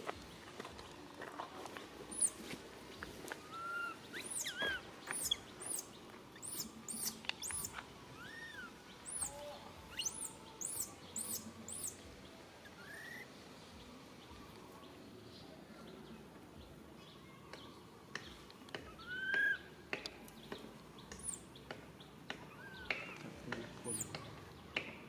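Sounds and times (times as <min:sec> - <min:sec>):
baby monkey squeaking: 0:02.1 - 0:02.4, 0:03.5 - 0:12.0, 0:18.9 - 0:19.6, 0:21.2 - 0:21.4
monkey whining: 0:03.4 - 0:05.8, 0:06.4 - 0:12.0.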